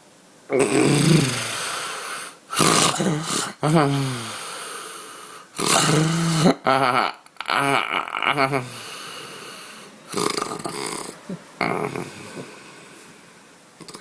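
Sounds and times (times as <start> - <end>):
man snoring loudly: 0.5 - 12.7
quiet breathing: 0.9 - 6.5, 8.4 - 14.0.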